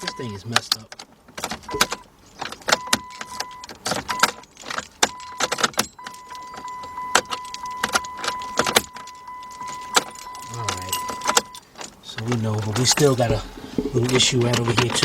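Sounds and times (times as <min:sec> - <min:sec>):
electronic warning tone: 0:00.0 - 0:00.4, 0:01.7 - 0:02.1, 0:05.1 - 0:11.6
car key rattling in ignition: 0:00.0 - 0:15.0.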